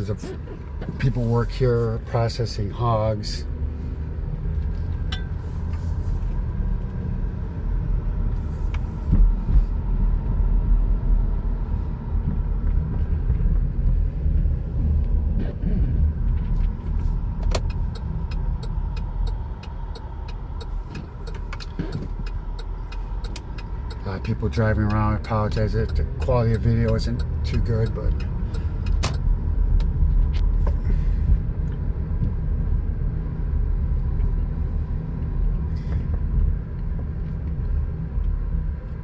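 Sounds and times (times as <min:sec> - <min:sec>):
car engine and road rumble: 0:00.0 - 0:39.0
sharp ticking clicks: 0:17.4 - 0:30.0.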